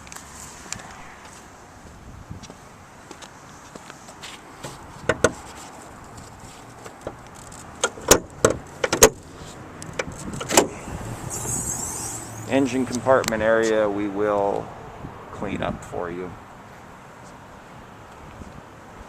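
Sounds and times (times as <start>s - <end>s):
car door latch clicks and clunks: 7.8s - 9.2s, 9.8s - 10.8s.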